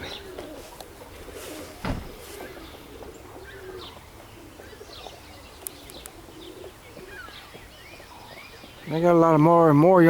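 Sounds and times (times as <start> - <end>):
pigeons cooing: 0.0 - 10.0
small birds chirping: 0.0 - 10.0
thump: 1.8 - 2.4.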